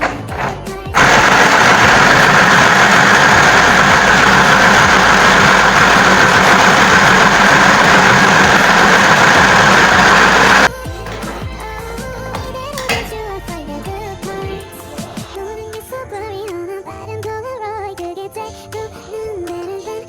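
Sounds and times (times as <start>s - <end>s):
electric sewing machine running: 0.0s - 11.3s.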